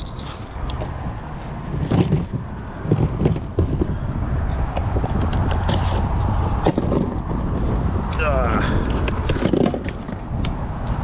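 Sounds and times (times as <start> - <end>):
magnet clicking and knocking: 0.0 - 0.9.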